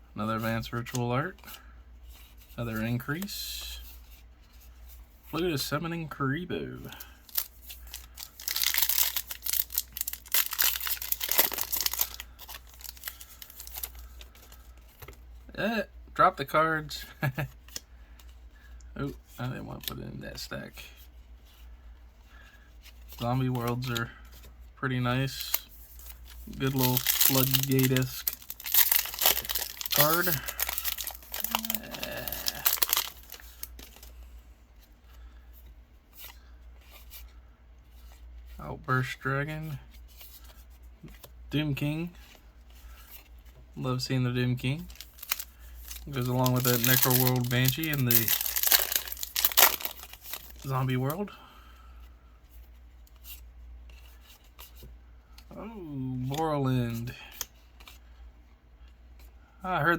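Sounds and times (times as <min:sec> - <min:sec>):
foil wrapper tearing and crinkling: 0:07.2 - 0:14.2, 0:26.3 - 0:34.0, 0:44.8 - 0:51.1.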